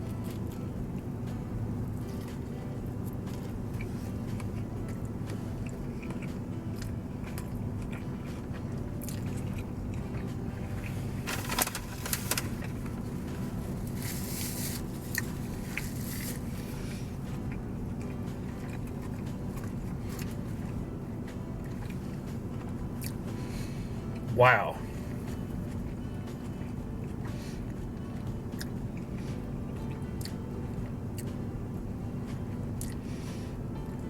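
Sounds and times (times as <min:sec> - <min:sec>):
steady low hum: 0:00.0 - 0:34.0
wet chewing: 0:03.3 - 0:11.2, 0:12.1 - 0:20.8, 0:21.6 - 0:23.2, 0:28.6 - 0:29.2, 0:30.2 - 0:30.4, 0:32.8 - 0:33.0
crunching and rustling: 0:13.6 - 0:17.0.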